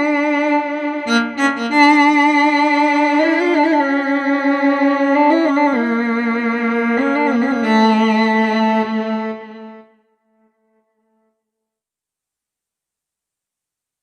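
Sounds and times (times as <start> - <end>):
keyboard violin melody: 0.0 - 10.1.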